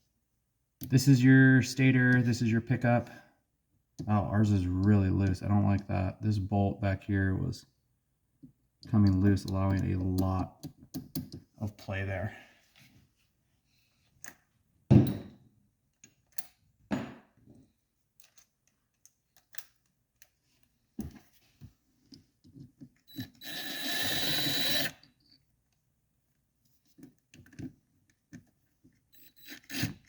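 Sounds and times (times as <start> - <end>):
loud thump: 14.9 - 15.2
power tool running: 23.4 - 24.9.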